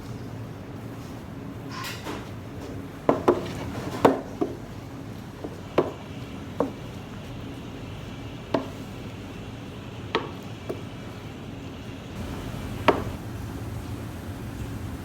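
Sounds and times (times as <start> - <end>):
steady low hum: 12.2 - 15.0
utensil knocking on cutting board: 12.6 - 13.2.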